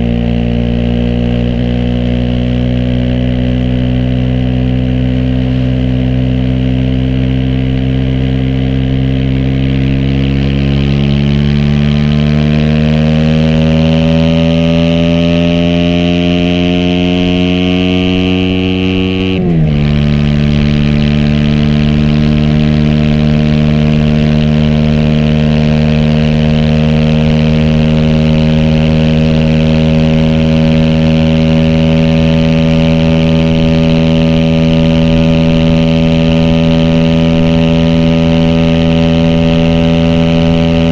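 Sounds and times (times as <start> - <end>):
motorcycle engine revving: 0.0 - 40.9.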